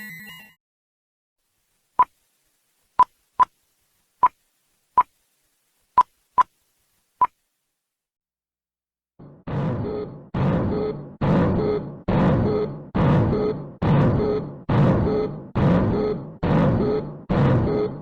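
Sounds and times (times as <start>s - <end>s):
loud multi-tone alarm: 10.7s - 18.0s.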